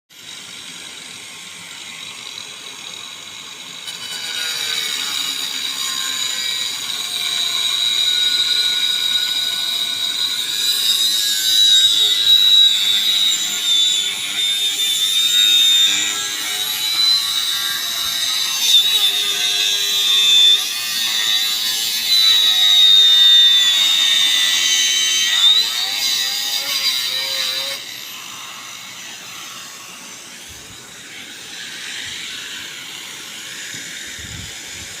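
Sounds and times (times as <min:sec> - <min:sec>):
angle grinder screeching through pipe: 0:00.1 - 0:35.0.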